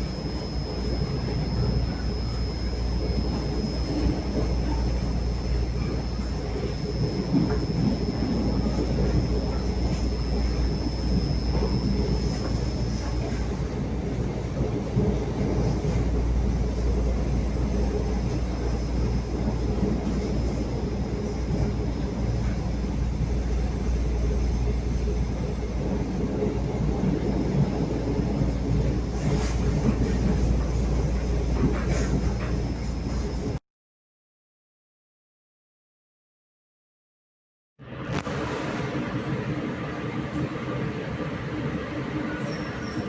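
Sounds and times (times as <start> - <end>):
faint high whine: 0.0 - 31.7
train wheels rumbling on rails: 0.0 - 33.6, 37.8 - 43.0.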